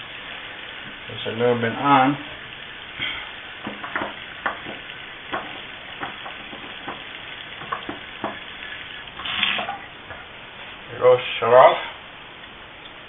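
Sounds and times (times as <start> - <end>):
faucet water running into sink: 3.6 - 9.9.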